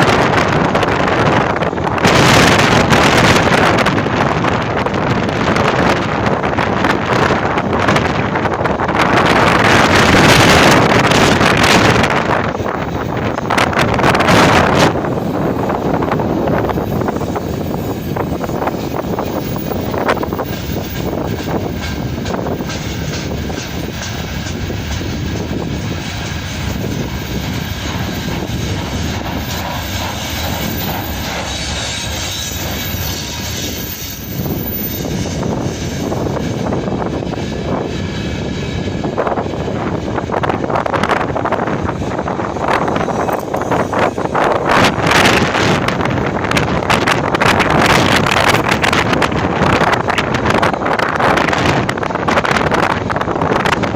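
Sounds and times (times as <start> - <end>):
train wheels rolling on rails: 0.0 - 53.9
wind buffeting microphone: 0.0 - 53.9.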